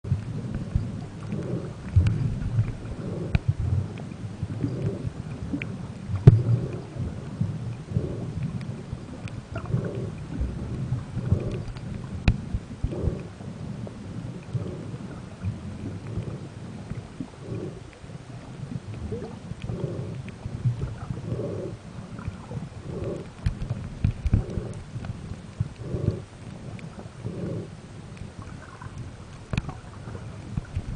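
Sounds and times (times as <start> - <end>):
muffled underwater rumble: 0.0 - 30.9
soft pulse: 0.1 - 18.2.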